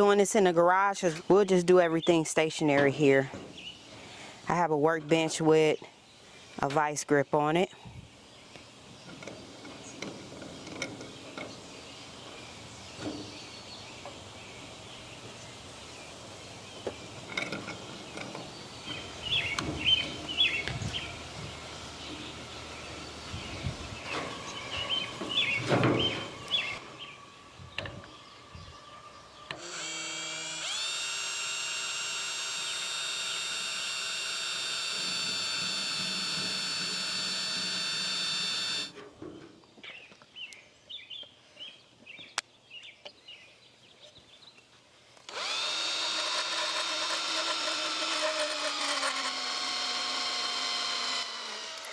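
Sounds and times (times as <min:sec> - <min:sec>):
electric drill running: 0:29.5 - 0:38.9, 0:45.3 - 0:51.9.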